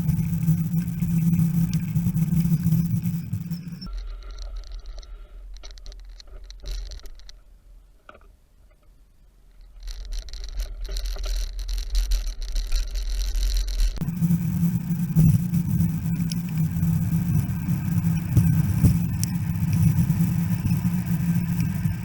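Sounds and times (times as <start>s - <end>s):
wind rumbling on microphone: 0.0s - 4.1s, 10.1s - 22.0s
bicycle ticks and rattles: 0.0s - 7.5s, 9.5s - 22.0s.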